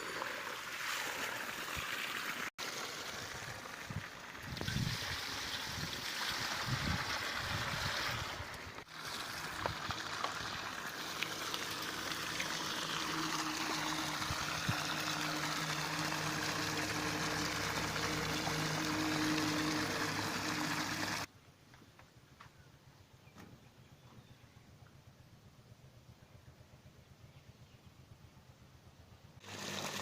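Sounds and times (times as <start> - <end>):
water rushing and pouring: 0.0 - 21.3, 29.4 - 30.0
steady motor hum: 6.7 - 21.3.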